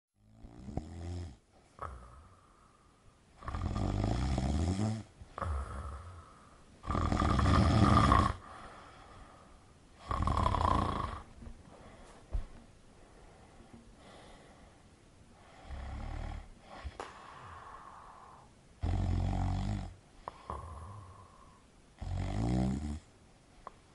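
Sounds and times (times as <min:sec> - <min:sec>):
person snoring loudly: 0:03.4 - 0:08.5, 0:10.0 - 0:11.3, 0:17.8 - 0:23.1.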